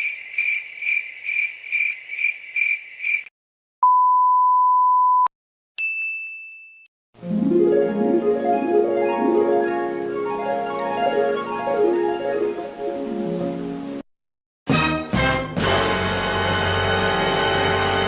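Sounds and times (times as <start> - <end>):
censor bleep: 3.8 - 5.3
bright ding: 5.8 - 6.9
plucked-string harp-like music: 7.2 - 13.4.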